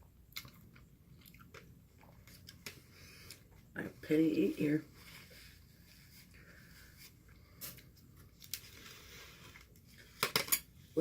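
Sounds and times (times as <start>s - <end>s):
chewing noodles: 0.3s - 3.6s.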